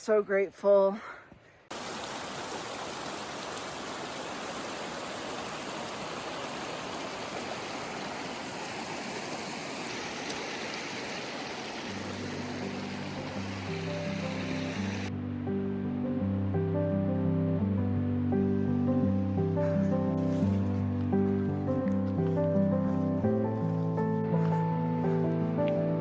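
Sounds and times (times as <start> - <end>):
waterfall rushing: 1.7 - 15.1.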